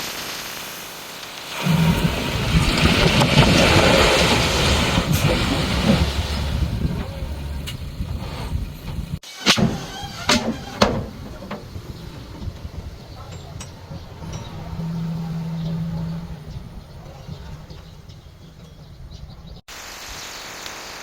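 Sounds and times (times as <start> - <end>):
bulldozer diesel engine rumbling: 1.5 - 19.6
sharp metal clanks: 6.4 - 19.5.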